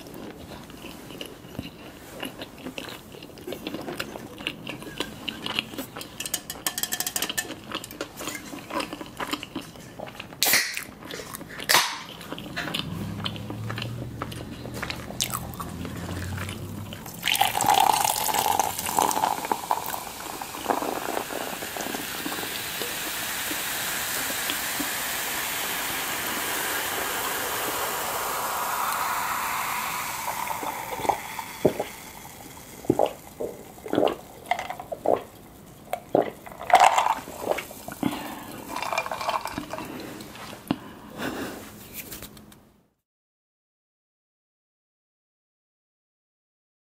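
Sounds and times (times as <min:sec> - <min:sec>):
person chewing and biting: 0:00.0 - 0:06.2, 0:07.4 - 0:19.0
steady rushing noise: 0:26.6 - 0:31.9.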